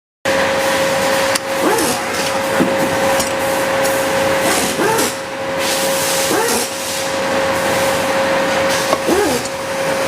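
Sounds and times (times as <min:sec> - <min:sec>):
steady hum: 0:00.3 - 0:10.0
spray gun air hiss: 0:04.5 - 0:08.0.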